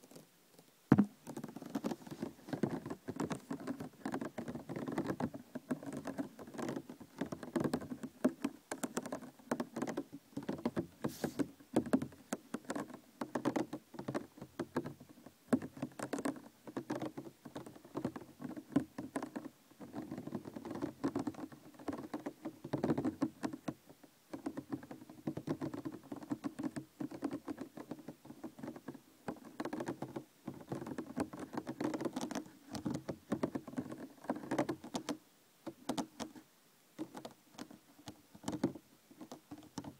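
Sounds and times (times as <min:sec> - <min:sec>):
plastic container taps and crinkles: 0:00.9 - 0:04.4.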